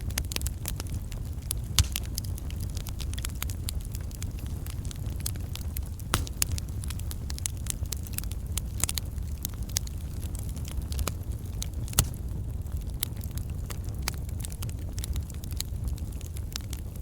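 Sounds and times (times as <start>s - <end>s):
crackles and pops of burning logs: 0.0s - 17.0s
low rumble of flames: 0.0s - 17.0s.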